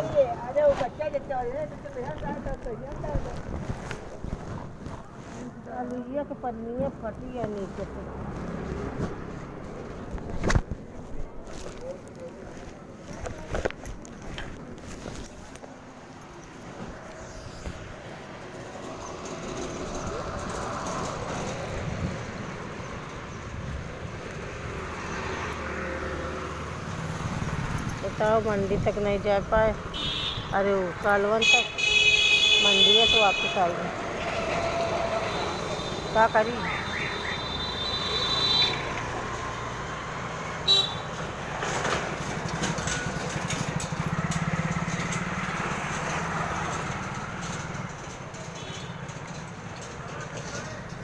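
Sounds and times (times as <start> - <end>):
road traffic noise: 0.0 - 51.0
vehicle engine hum: 0.0 - 51.0
high horn beep: 31.4 - 38.9.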